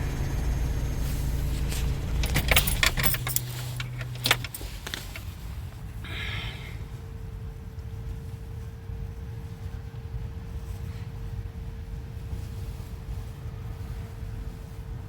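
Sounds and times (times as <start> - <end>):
engine idling: 0.0 - 7.0
keys jangling: 1.5 - 5.3.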